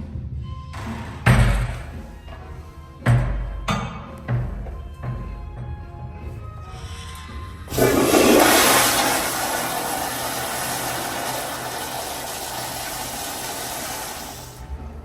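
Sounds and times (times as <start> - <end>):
toilet flushing: 7.7 - 14.7.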